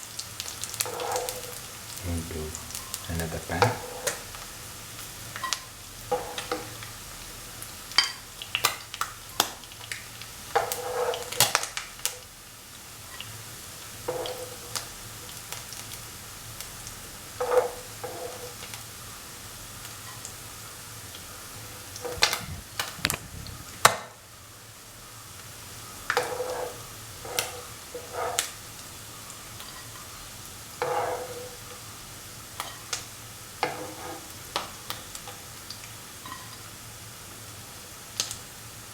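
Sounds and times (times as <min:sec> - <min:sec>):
fish sizzling in hot oil: 0:00.0 - 0:38.9
metal spatula knocking and scraping pan: 0:00.8 - 0:01.6, 0:02.7 - 0:04.2, 0:14.1 - 0:14.8, 0:17.4 - 0:18.6, 0:26.1 - 0:28.6, 0:30.8 - 0:31.7, 0:33.6 - 0:34.3.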